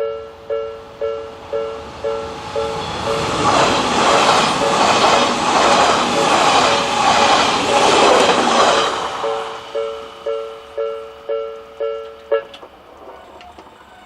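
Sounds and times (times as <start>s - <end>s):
crossing warning bell: 0.0s - 5.0s, 8.0s - 14.0s
train wheels clattering on rails: 1.4s - 11.0s, 11.8s - 14.0s.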